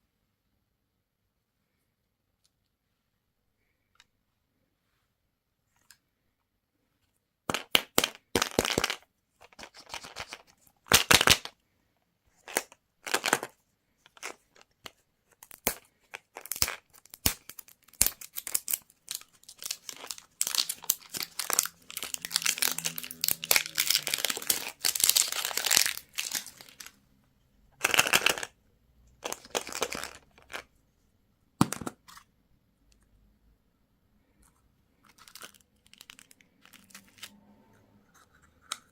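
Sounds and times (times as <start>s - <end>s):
candy wrappers crinkling and tearing: 15.4s - 27.0s, 29.2s - 30.7s, 35.0s - 37.3s.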